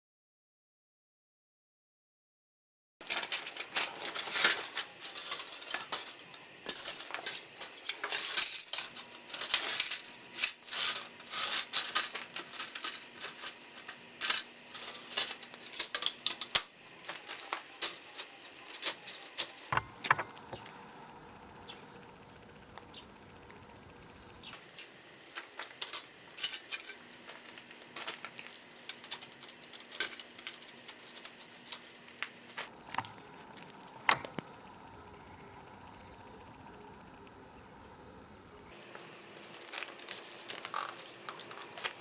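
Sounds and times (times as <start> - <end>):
steel parts clinking and rattling: 3.0 - 19.8, 24.6 - 32.7, 38.8 - 42.0
faint steady hum: 3.0 - 42.0.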